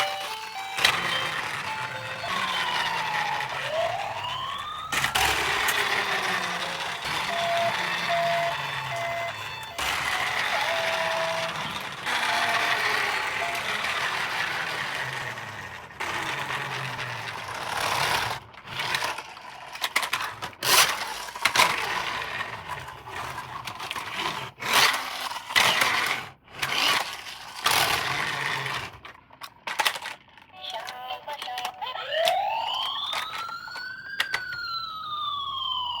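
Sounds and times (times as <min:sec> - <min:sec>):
electronic siren wail: 0:00.0 - 0:15.7, 0:32.0 - 0:36.0.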